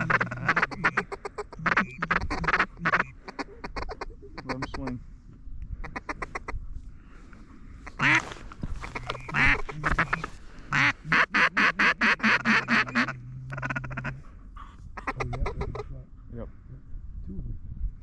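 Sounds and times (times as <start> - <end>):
duck quacking: 0.0 - 4.9, 7.8 - 14.3, 15.0 - 15.9.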